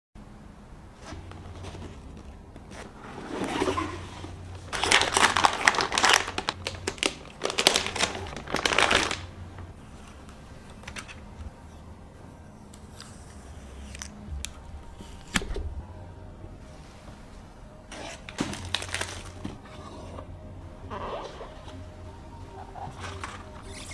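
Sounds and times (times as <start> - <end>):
plastic packaging crinkling: 1.0 - 11.4, 17.9 - 20.2.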